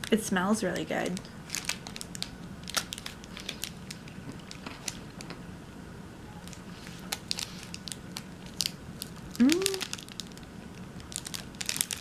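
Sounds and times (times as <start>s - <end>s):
low steady hum: 0.0s - 12.0s
person chewing crunchy candy: 6.4s - 10.4s, 11.0s - 12.0s.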